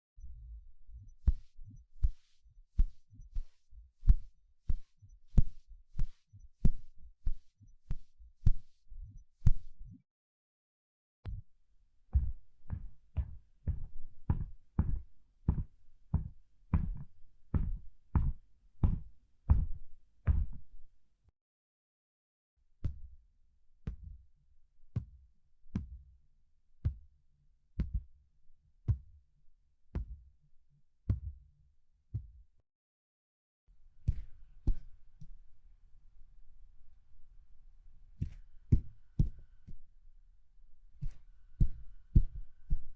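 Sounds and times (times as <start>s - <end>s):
soft footsteps: 1.2s - 8.8s, 12.1s - 21.0s, 34.1s - 35.3s, 41.0s - 42.8s.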